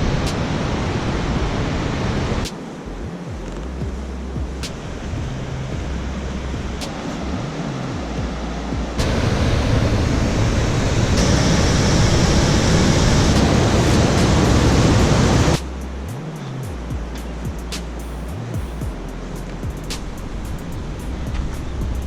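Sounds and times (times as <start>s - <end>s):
waterfall roaring: 0.0s - 3.8s, 4.6s - 15.6s
background music with bass: 0.0s - 22.0s
quiet water noise: 0.0s - 22.0s.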